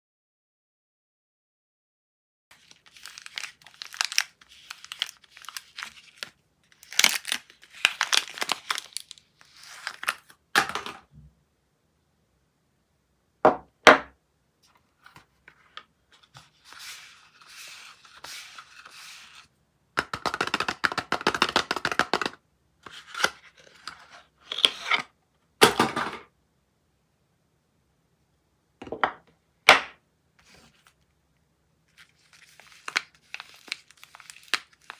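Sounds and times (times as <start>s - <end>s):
packaging tearing and crinkling: 2.5s - 10.4s, 32.0s - 34.9s.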